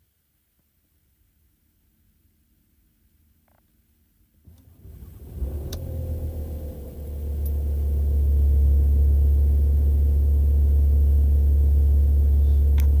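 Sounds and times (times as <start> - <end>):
diesel engine starting and idling: 4.5 - 13.0.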